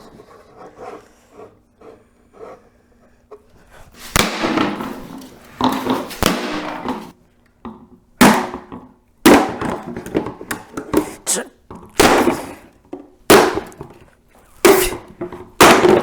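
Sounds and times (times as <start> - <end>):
plastic scraping rasp: 13.5 - 16.0.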